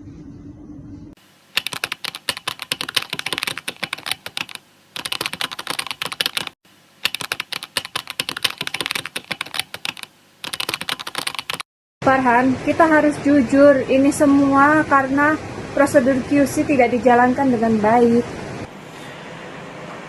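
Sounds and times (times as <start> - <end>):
rapid keyboard typing: 1.5 - 11.7.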